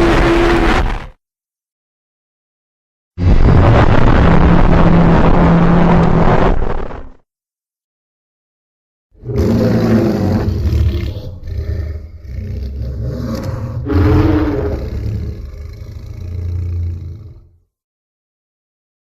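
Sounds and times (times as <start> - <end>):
long deep monster roar: 9.2 - 17.6.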